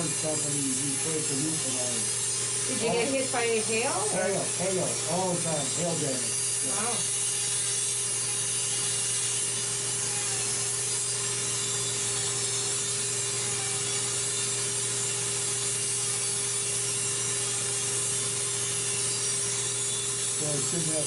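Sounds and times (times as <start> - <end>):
electric nail drill grinding: 0.0 - 21.0.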